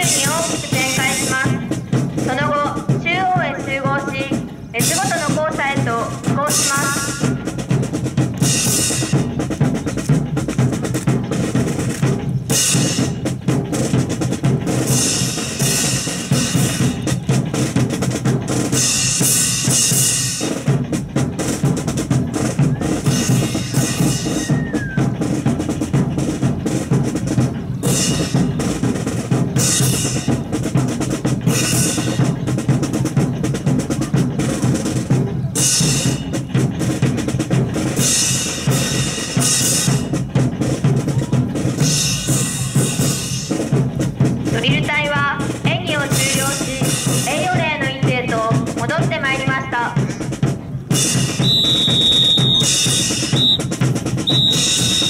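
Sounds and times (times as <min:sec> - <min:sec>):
snare and bass drum march beat: 0:00.0 - 0:55.0.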